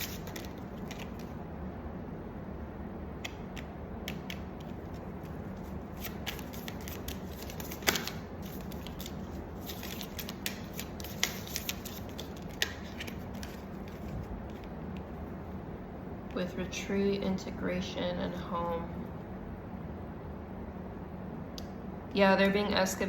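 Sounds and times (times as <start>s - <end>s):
cards being shuffled: 0.0s - 1.4s, 3.2s - 15.1s.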